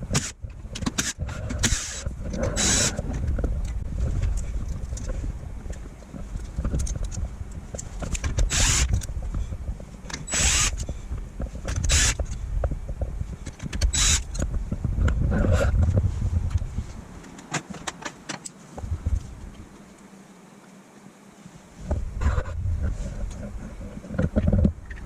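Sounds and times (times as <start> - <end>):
steady low rumble: 0.0 - 17.3, 18.8 - 19.8, 21.7 - 25.0
tool rasping bursts: 1.0 - 3.0, 8.4 - 9.0, 10.2 - 10.8, 11.8 - 12.3, 13.8 - 14.3.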